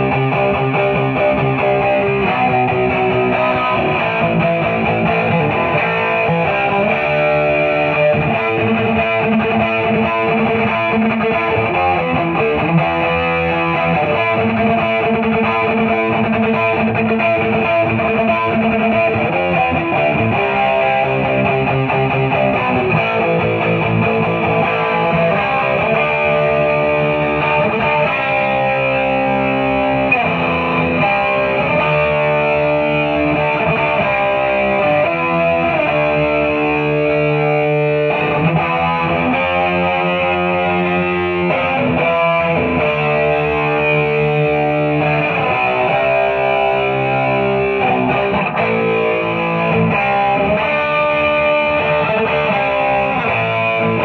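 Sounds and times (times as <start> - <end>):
overdriven electric guitar chords: 0.0 - 54.0.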